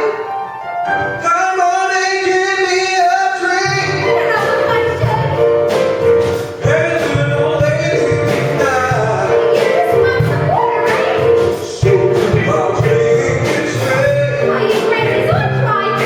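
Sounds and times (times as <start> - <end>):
band with bass and drums: 3.9 - 16.0
person singing: 6.6 - 16.0.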